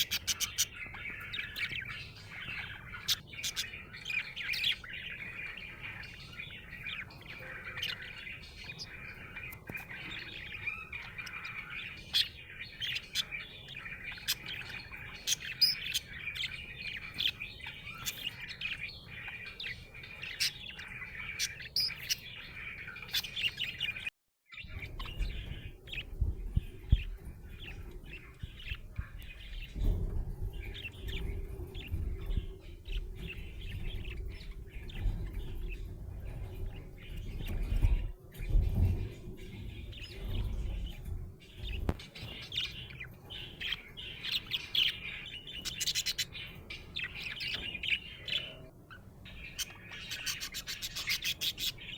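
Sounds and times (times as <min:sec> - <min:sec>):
budgerigar chirping and warbling: 0:00.0 - 0:05.3
low rumble: 0:24.7 - 0:42.4.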